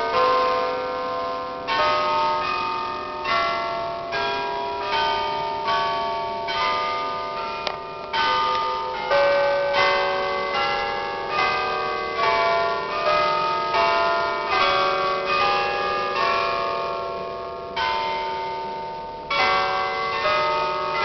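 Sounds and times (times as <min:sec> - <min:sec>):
church bells ringing: 0:00.0 - 0:21.0.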